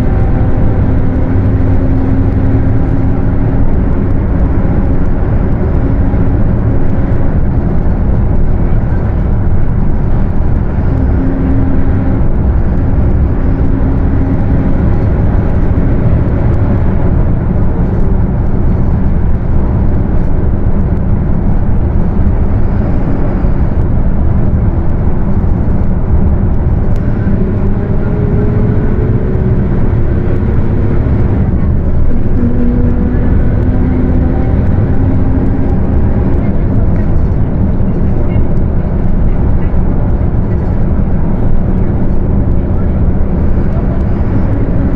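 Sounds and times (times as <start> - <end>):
bus diesel engine drone: 0.0 - 44.9
humming differential: 0.0 - 44.9
road noise: 0.0 - 44.9.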